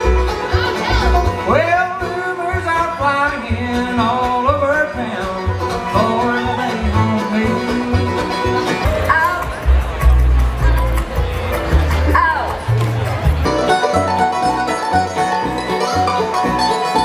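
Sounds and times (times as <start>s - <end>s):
person singing: 0.0s - 9.8s
bass beat: 0.0s - 17.0s
stringed instruments: 0.0s - 17.0s.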